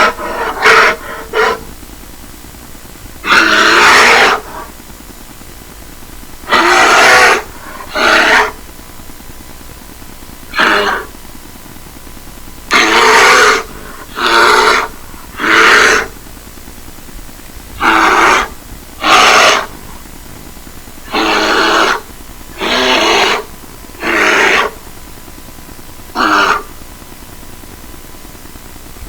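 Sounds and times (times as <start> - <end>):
loud animal calls: 0.0 - 1.7, 3.2 - 4.8, 6.4 - 8.6, 10.5 - 11.2, 12.7 - 16.2, 17.8 - 20.0, 21.0 - 24.9, 26.1 - 26.8.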